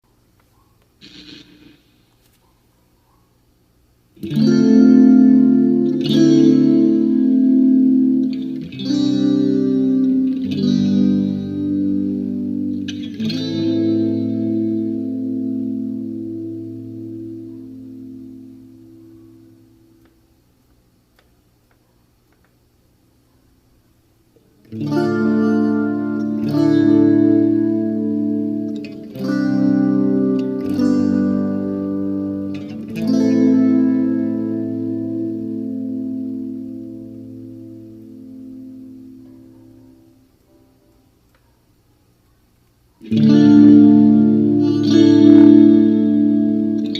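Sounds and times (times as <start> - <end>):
electric guitar chords with chorus: 1.0 - 1.8, 4.2 - 20.1, 24.6 - 40.7, 43.0 - 46.9.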